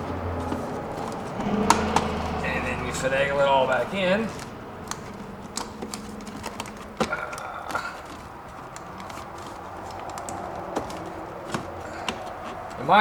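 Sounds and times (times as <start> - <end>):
sharp knock: 1.4 - 3.1
plastic parts clicking: 4.4 - 12.8.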